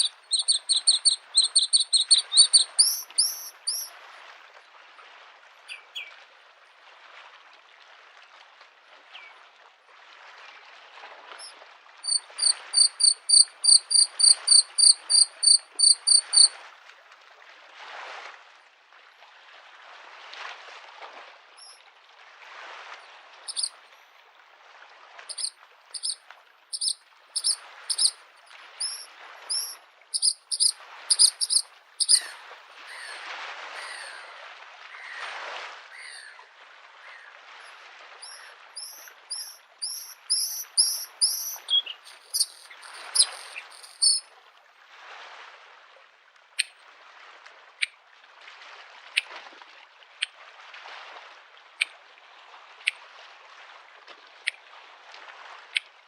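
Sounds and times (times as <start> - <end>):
bird singing high notes: 0.0 - 3.9, 12.1 - 16.5, 28.8 - 32.3, 38.2 - 44.2
lake waves washing against shore: 0.0 - 5.7, 10.8 - 46.0.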